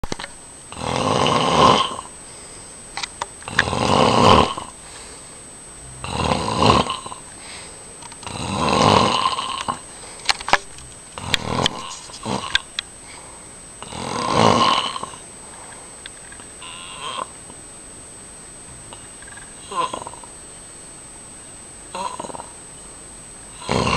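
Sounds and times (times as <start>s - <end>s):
loud snoring: 0.7s - 2.1s, 3.5s - 4.8s, 5.8s - 7.3s, 8.2s - 9.8s, 11.2s - 12.6s, 13.8s - 15.2s, 16.6s - 17.3s, 18.7s - 20.3s, 21.9s - 22.5s, 23.5s - 23.9s.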